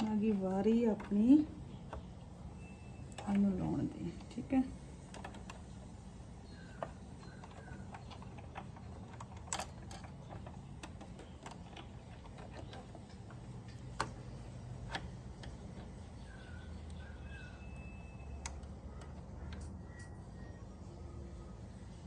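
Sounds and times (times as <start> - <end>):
sewing machine parts clicking: 0.0 - 2.4, 3.0 - 17.0
low steady hum: 0.0 - 22.0.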